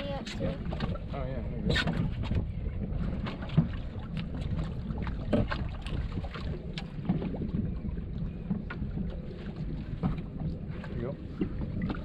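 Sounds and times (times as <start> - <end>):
wind rumbling on microphone: 0.0 - 12.0.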